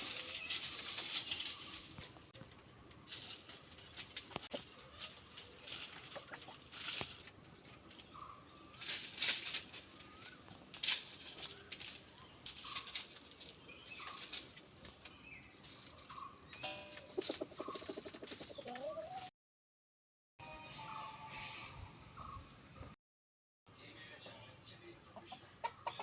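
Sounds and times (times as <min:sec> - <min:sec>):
rustling or scratching: 0:00.0 - 0:08.2, 0:08.8 - 0:19.3
faint chirp-like calls: 0:20.6 - 0:22.9.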